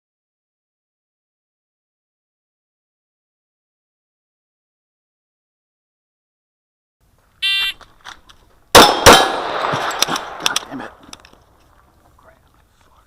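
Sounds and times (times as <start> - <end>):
electronic start beep: 7.4 - 7.8
pistol shots with echo: 8.7 - 11.0.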